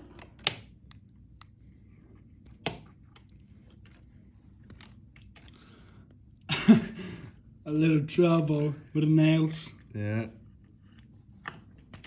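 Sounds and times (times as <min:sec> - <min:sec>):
light clicks and handling noise: 0:00.0 - 0:05.6.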